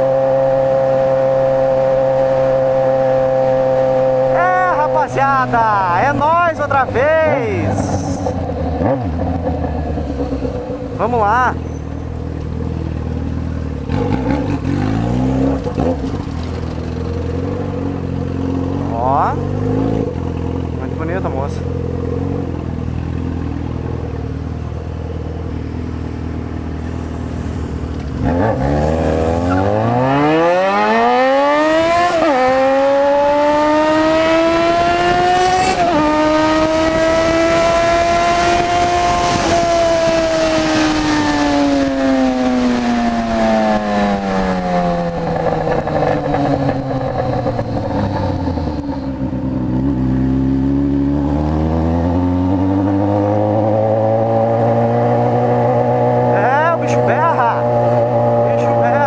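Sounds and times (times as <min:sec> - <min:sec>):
motorcycle engine accelerating: 0:00.0 - 0:59.0
gear changes: 0:25.4 - 0:59.0.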